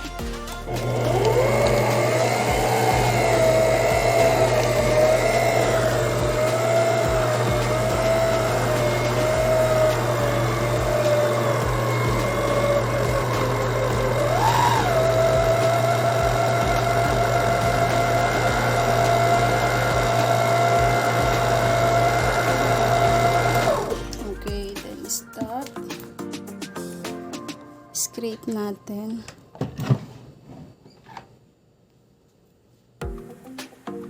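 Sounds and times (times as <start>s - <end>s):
stand mixer motor whining: 0.7s - 24.2s.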